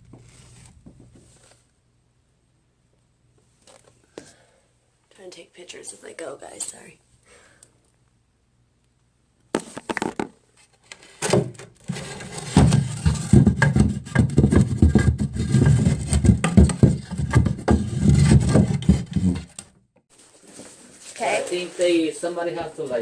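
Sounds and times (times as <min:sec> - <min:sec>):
knocks and scraping: 0:11.0 - 0:19.8.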